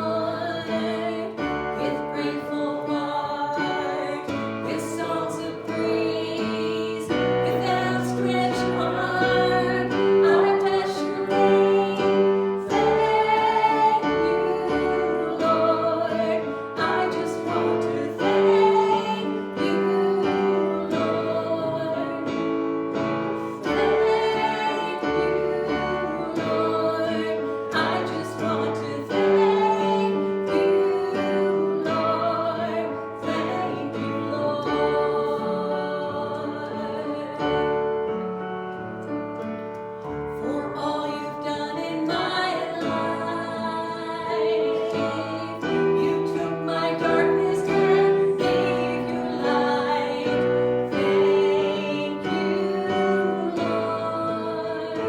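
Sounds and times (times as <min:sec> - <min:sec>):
person singing: 0:00.0 - 0:22.5
piano accompaniment: 0:00.0 - 0:55.0.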